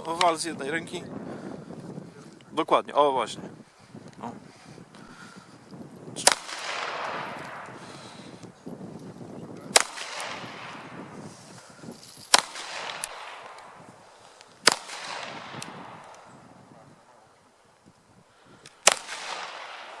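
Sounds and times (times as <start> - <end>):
gunshots with echoing tail: 6.2 - 8.5, 9.7 - 11.4, 12.3 - 14.0, 14.6 - 17.1, 18.8 - 20.0.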